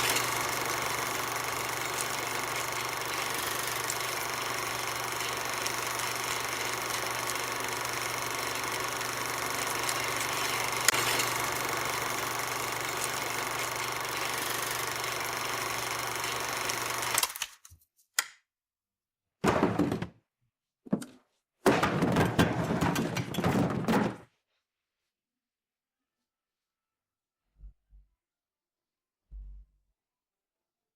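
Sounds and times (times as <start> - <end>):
film projector whirring: 0.0 - 17.6
knocking and rattling: 20.9 - 24.3.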